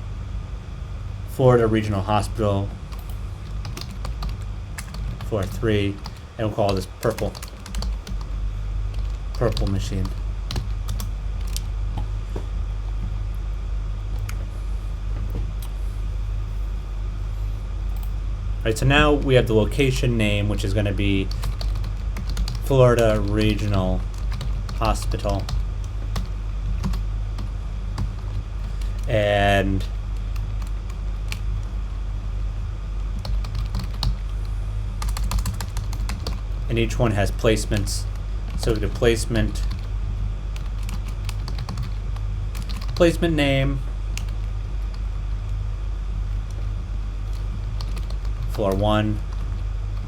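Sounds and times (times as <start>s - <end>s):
steady low hum: 0.0s - 50.0s
steady low rumble: 0.0s - 50.0s
typing on computer keyboard: 2.9s - 8.3s, 21.3s - 29.1s, 33.2s - 34.2s, 35.0s - 36.6s, 40.6s - 43.0s, 47.3s - 49.6s.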